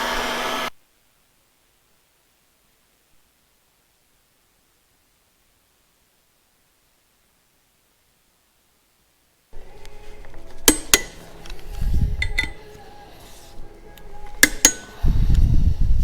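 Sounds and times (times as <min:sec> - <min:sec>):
metallic clinks of tools: 0:10.3 - 0:12.8, 0:14.1 - 0:15.0.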